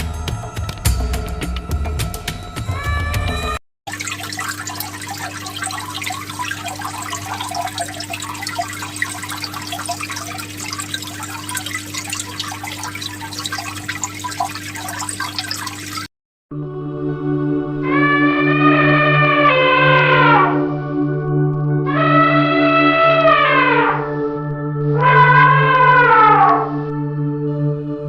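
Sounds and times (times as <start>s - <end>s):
water splashing and dripping: 3.9s - 16.1s.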